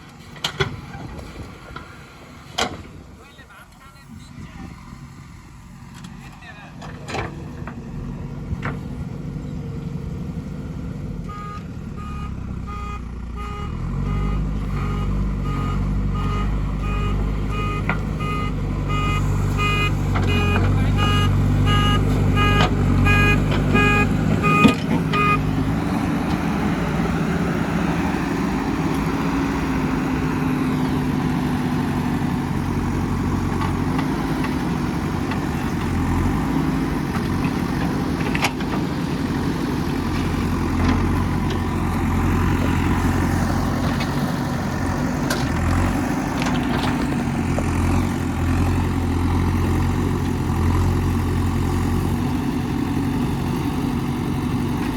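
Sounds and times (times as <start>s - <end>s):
digging machine diesel engine running: 0.0s - 54.9s
reversing alarm beeping: 11.3s - 25.5s.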